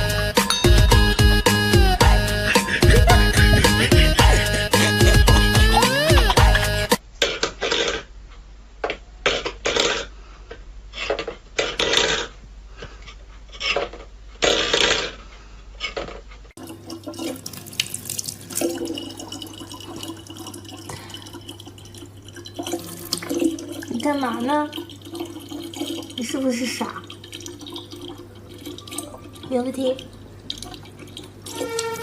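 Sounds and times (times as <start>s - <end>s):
tap running: 2.0s - 7.0s
water splashing: 16.6s - 32.0s.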